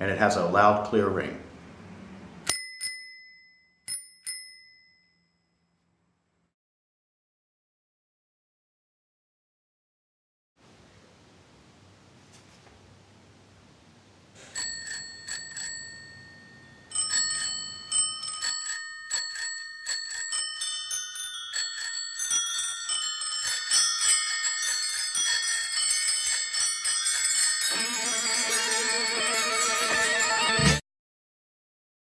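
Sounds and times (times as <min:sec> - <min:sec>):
bicycle bell ringing: 0:02.5 - 0:05.7, 0:14.6 - 0:30.8.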